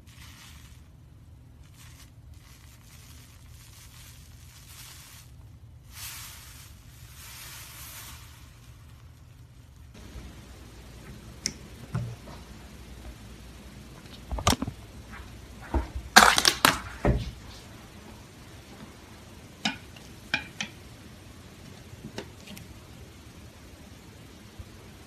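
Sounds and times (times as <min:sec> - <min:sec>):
slime crackling and popping: 0:16.1 - 0:16.9.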